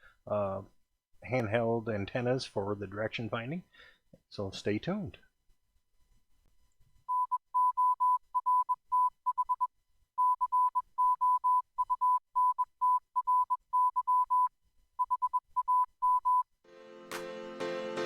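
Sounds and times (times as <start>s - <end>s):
morse code beeps: 7.1s - 16.5s.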